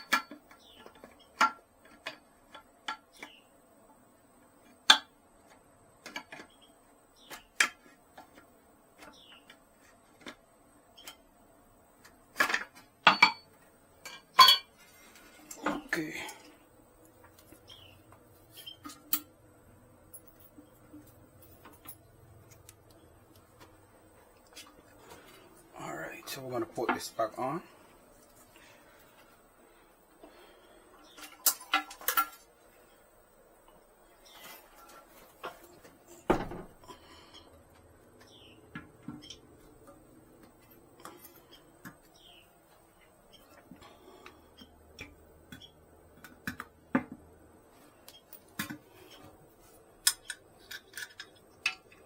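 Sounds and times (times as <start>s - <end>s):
faint low hum: 0.0s - 52.0s
toilet parts clinking on porcelain: 12.4s - 14.7s
toilet tank parts clicking: 50.0s - 52.0s.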